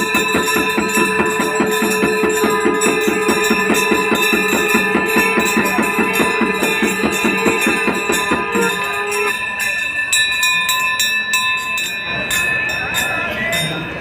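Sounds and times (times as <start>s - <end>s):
rapid even drumbeats: 0.0s - 9.8s
jingling hand cymbals: 0.0s - 14.0s
temple bells ringing: 0.0s - 14.0s.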